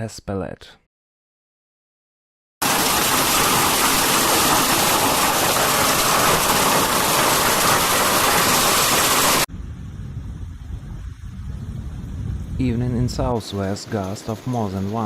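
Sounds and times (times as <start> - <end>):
thunderstorm downpour roaring: 2.6 - 15.0.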